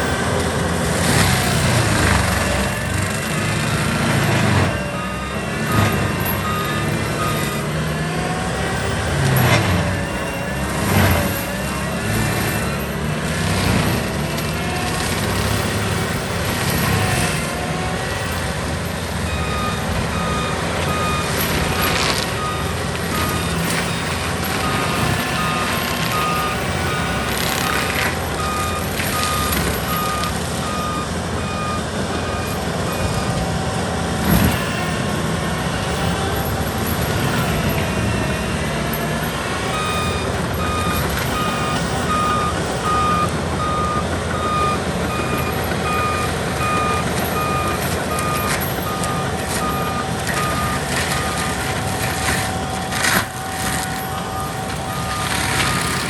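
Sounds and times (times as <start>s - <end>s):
forestry mulcher running: 0.0s - 56.0s
trees cracking and snapping: 10.6s - 18.4s, 19.9s - 30.7s, 46.1s - 56.0s
backup alarm beeping: 39.6s - 56.0s.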